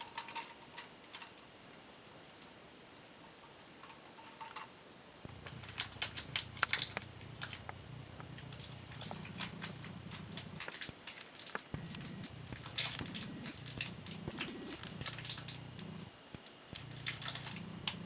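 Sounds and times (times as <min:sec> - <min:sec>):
low steady hum: 0:05.2 - 0:18.0
birds tapping at feeder: 0:05.3 - 0:10.9, 0:11.7 - 0:16.1.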